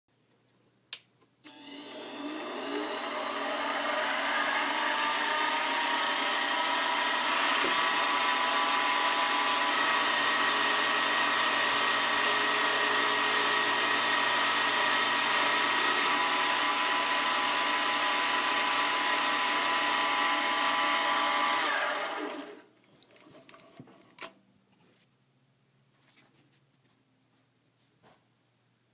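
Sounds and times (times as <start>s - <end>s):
lathe motor whining: 1.5s - 22.6s.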